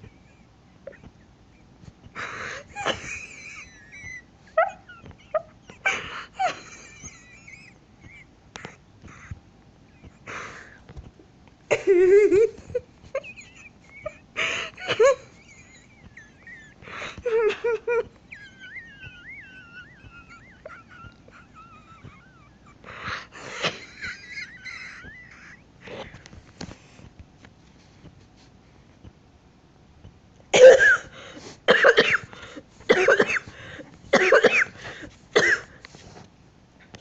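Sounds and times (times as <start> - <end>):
person wheezing laugh: 2.1 - 10.8, 11.7 - 26.2.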